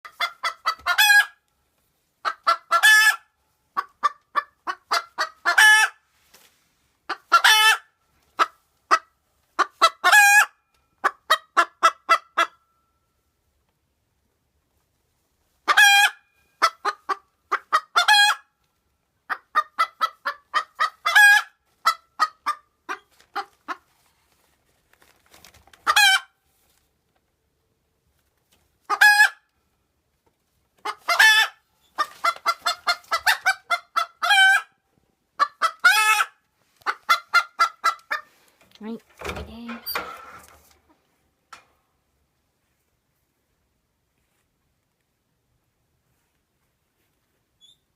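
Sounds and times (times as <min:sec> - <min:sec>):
hen clucking and squawking: 0:00.0 - 0:01.4, 0:02.2 - 0:06.0, 0:07.0 - 0:12.6, 0:15.6 - 0:18.5, 0:19.2 - 0:23.9, 0:25.8 - 0:26.3, 0:28.8 - 0:29.5, 0:30.8 - 0:34.8, 0:35.4 - 0:38.5.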